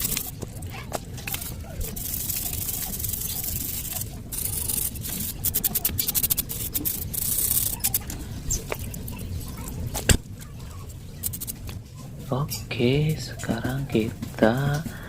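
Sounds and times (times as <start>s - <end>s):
brush scrubbing metal: 0.0s - 10.0s, 10.7s - 11.8s.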